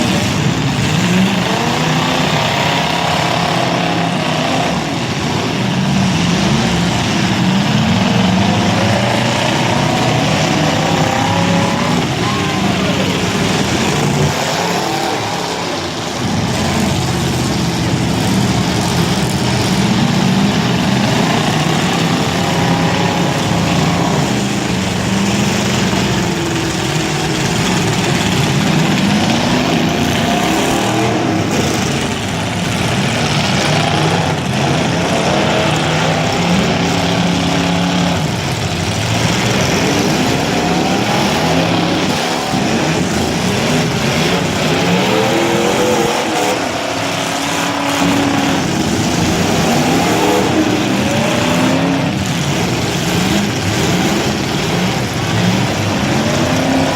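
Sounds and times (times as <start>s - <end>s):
car engines revving: 0.0s - 56.9s.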